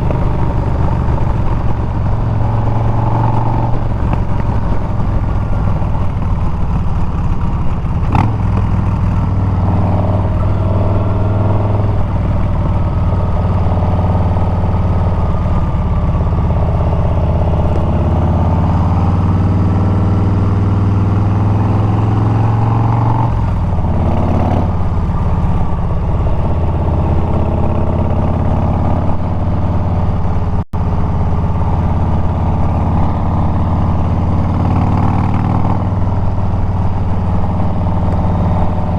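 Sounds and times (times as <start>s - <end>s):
motorcycle engine running loud: 0.0s - 38.9s.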